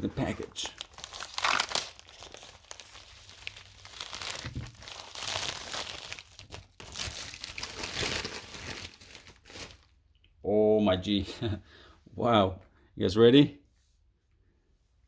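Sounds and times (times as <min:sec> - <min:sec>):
packaging crinkling and tearing: 0:00.1 - 0:10.0.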